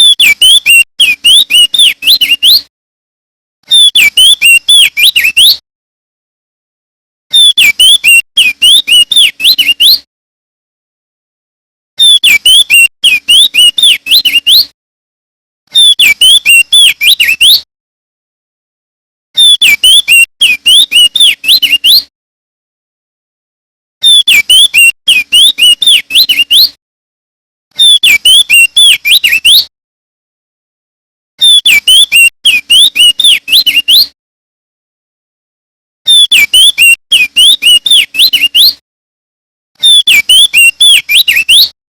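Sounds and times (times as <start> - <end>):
bird singing warbling notes: 3.7 - 5.6, 39.8 - 41.8.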